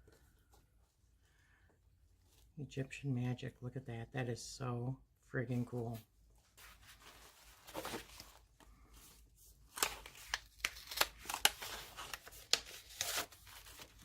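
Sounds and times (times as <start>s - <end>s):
paper packaging rustling: 6.6s - 14.0s.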